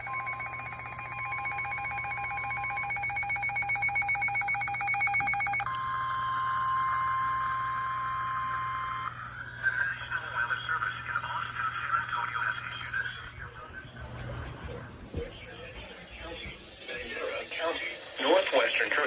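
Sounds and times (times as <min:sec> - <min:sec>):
steady alarm tone: 0:00.0 - 0:09.0
pulsing electronic alarm: 0:00.0 - 0:09.2
radio hiss: 0:12.8 - 0:19.0.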